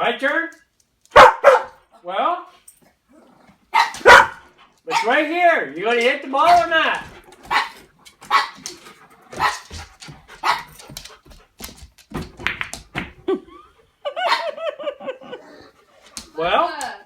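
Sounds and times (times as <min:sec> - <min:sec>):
dog barking: 0:01.1 - 0:01.9, 0:03.7 - 0:05.3, 0:06.4 - 0:06.8, 0:07.5 - 0:08.7, 0:09.3 - 0:09.8, 0:10.4 - 0:10.8, 0:14.2 - 0:14.6
dog whining yips: 0:03.8 - 0:05.2.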